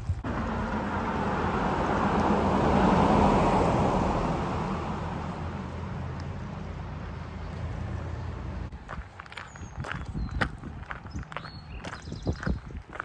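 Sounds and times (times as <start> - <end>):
vehicle passing at speed: 0.2 - 8.8.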